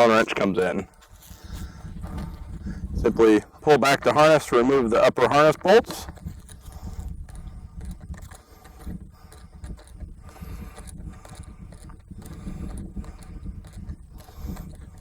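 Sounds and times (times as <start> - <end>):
wind buffeting microphone: 0.0 - 15.0
wrench clicks and scrapes: 5.8 - 15.0.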